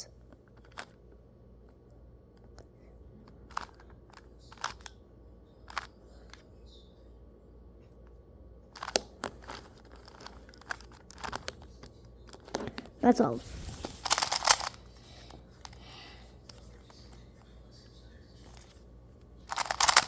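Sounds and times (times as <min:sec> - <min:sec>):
puzzle cube clicking: 0:13.6 - 0:14.8, 0:19.5 - 0:20.0.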